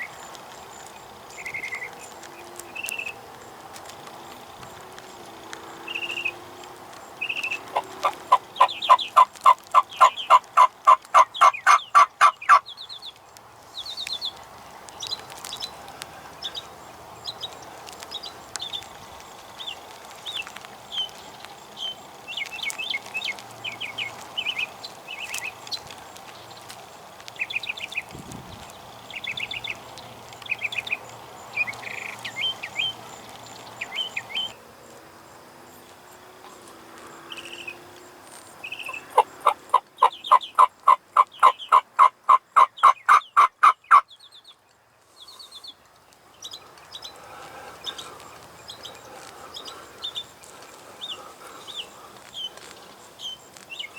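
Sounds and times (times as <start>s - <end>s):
turkey yelping: 7.6s - 12.6s, 38.9s - 44.0s
short high bird calls: 38.6s - 44.1s.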